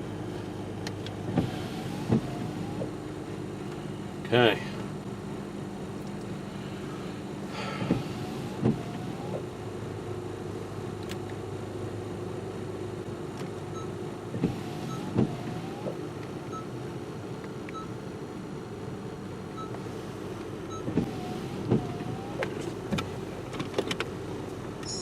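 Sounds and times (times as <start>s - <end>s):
car engine idling: 14.5s - 25.0s.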